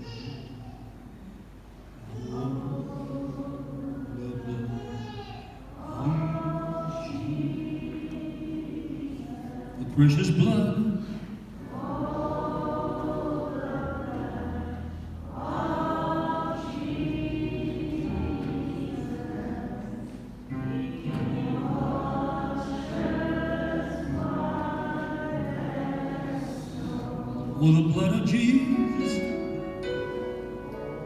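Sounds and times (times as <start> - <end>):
group of voices singing: 2.0 - 5.0, 5.8 - 10.9, 11.6 - 29.5.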